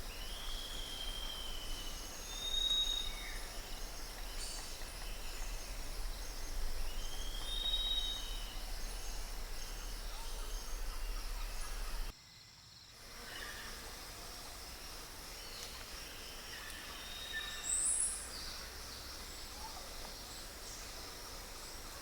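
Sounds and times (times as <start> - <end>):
steady background hiss: 0.0 - 22.0
low hum: 3.5 - 12.1
whistled bird call: 7.0 - 8.6.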